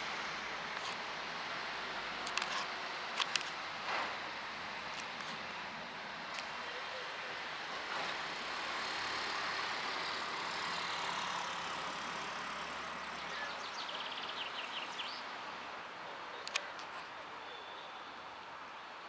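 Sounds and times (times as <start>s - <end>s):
sharp click: 16.4s - 17.1s.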